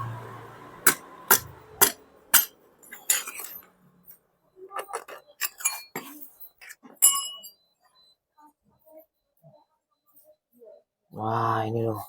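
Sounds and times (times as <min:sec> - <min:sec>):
metal parts clinking: 0:00.9 - 0:03.7, 0:04.7 - 0:07.6.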